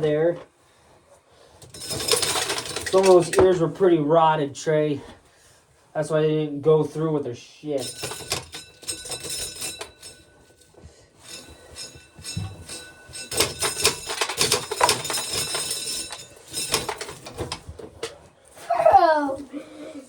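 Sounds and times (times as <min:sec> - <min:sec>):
corn sheller clattering: 0:01.6 - 0:03.6, 0:07.8 - 0:10.5, 0:11.2 - 0:18.2
metallic clinks: 0:07.8 - 0:17.7.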